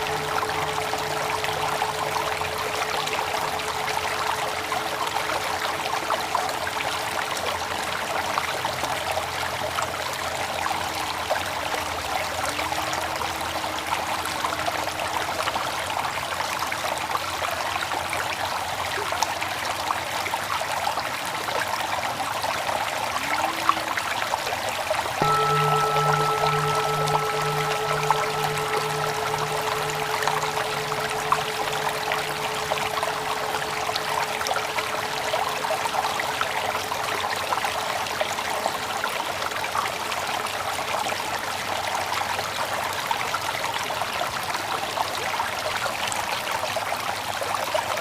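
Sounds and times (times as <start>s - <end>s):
soft gliding tones: 0.0s - 6.2s, 25.2s - 37.5s
background music sustained tones: 0.0s - 7.3s, 25.2s - 38.4s
flowing water trickle: 0.0s - 48.0s.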